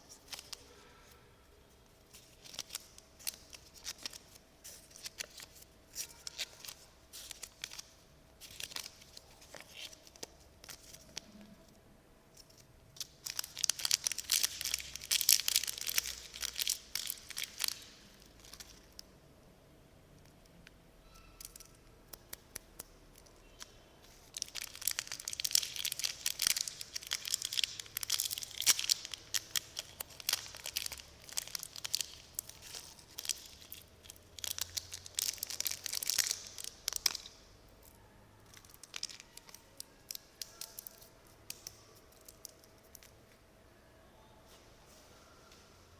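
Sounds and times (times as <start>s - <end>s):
snack wrapper crackling and tearing: 2.2s - 11.2s, 13.0s - 19.1s, 21.4s - 37.9s, 38.5s - 43.1s.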